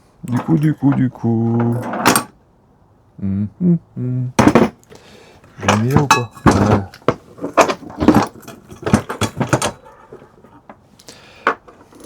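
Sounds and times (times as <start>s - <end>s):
metal parts and tools clinking: 0.2s - 2.4s, 5.5s - 10.8s, 11.4s - 12.0s.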